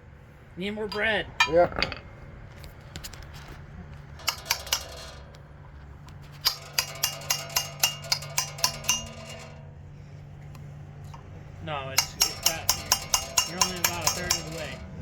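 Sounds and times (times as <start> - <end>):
hammer striking steel rod: 4.2 - 5.4, 6.3 - 9.6, 11.9 - 15.0.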